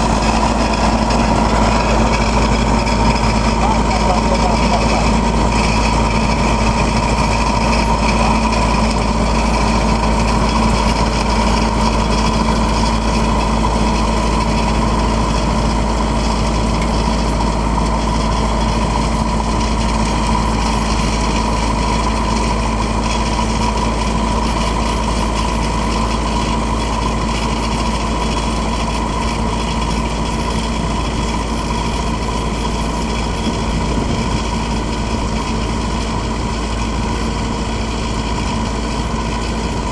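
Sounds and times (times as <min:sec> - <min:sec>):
high whine: 0:00.0 - 0:15.1
trenching machine engine running: 0:00.0 - 0:39.9.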